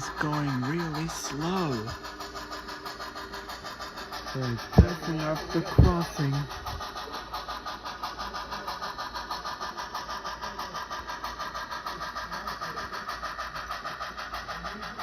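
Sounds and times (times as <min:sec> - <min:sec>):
model train clattering: 0:00.0 - 0:15.0.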